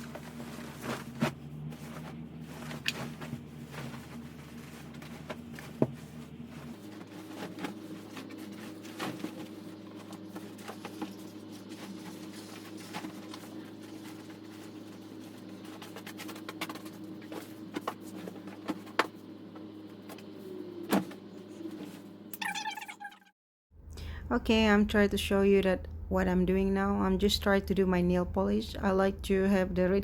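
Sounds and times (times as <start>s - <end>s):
steady low hum: 0.0s - 22.3s, 23.8s - 30.0s.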